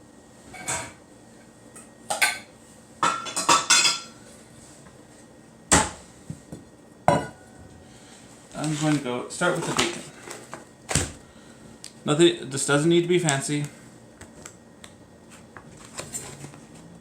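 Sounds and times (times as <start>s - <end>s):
dishes knocking and clinking: 2.1s - 4.1s, 5.8s - 7.5s.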